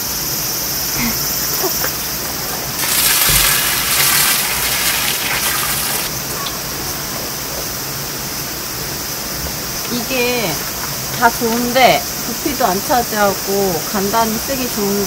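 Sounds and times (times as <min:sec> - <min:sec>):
steady background hiss: 0:00.0 - 0:15.0
water gushing from container: 0:01.9 - 0:06.1.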